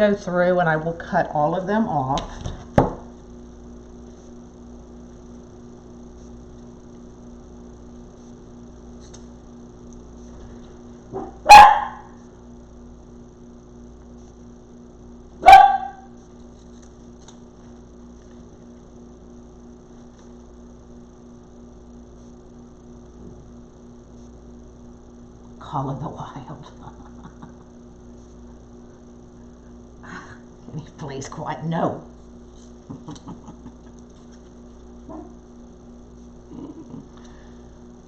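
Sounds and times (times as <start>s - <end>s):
steady low hum: 0.0s - 38.0s
dog barking: 11.1s - 12.1s, 15.4s - 16.1s.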